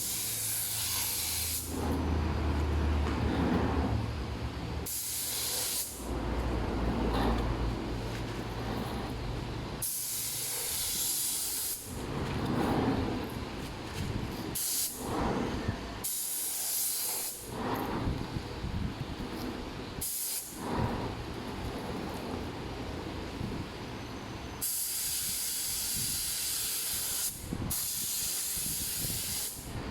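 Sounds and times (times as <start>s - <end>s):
hissing spray bursts: 0.0s - 2.0s, 4.8s - 6.1s, 9.8s - 12.2s, 14.4s - 18.3s, 20.0s - 21.4s, 24.6s - 29.9s.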